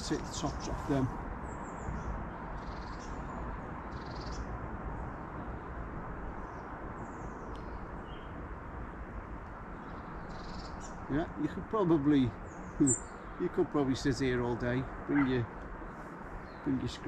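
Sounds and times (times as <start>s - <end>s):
faint high-pitched bird calls: 0.0s - 4.5s, 9.8s - 11.2s, 12.5s - 13.6s, 15.0s - 15.6s
outdoor background noise: 0.0s - 17.0s.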